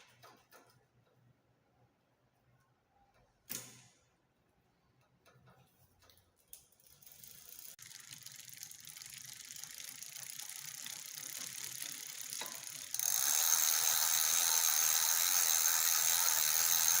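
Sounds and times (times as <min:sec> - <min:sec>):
bike drivetrain ratcheting tick: 0:06.0 - 0:17.0.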